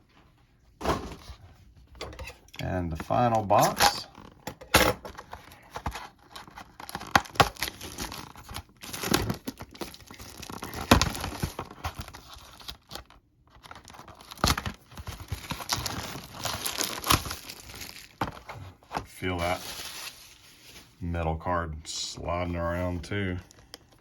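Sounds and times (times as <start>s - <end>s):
cardboard packaging rustling and tearing: 3.0s - 4.4s, 5.0s - 21.0s.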